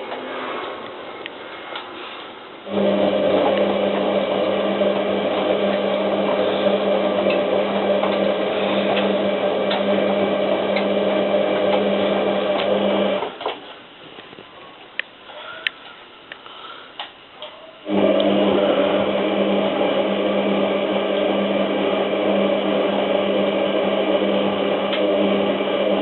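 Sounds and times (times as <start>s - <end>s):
washing machine motor humming: 2.6s - 13.6s, 17.8s - 26.0s.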